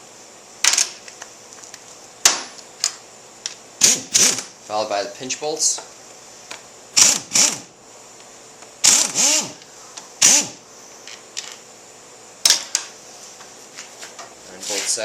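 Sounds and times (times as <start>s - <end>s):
power tool motor whirring: 3.8s - 4.5s, 7.0s - 7.7s, 8.8s - 9.6s, 10.2s - 10.6s.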